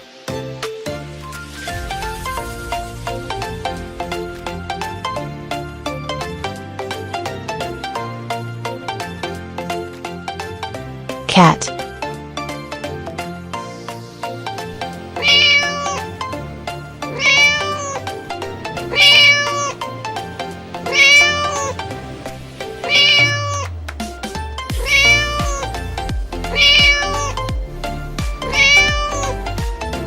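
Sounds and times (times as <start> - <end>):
children's background music: 0.0 - 30.0
cat meowing: 11.3 - 11.7, 15.0 - 16.4, 17.0 - 18.2, 18.8 - 20.0, 20.8 - 22.0, 22.8 - 23.7, 24.7 - 27.6, 28.4 - 29.6.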